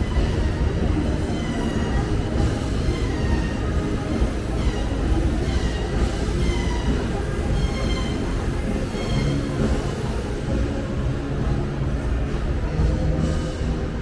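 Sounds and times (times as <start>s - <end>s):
high squeals from train wheels: 0.0s - 10.8s
metro train rumbling past: 0.0s - 14.0s.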